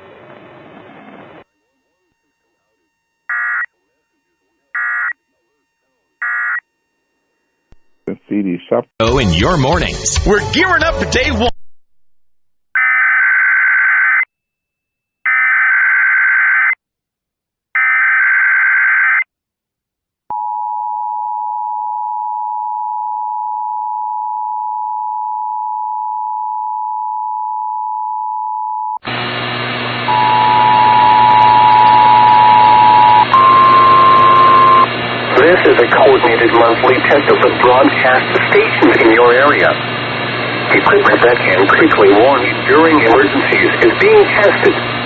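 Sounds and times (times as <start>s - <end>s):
harsh buzzing noise: 29.0s - 45.0s
two-tone attention signal: 30.1s - 34.9s.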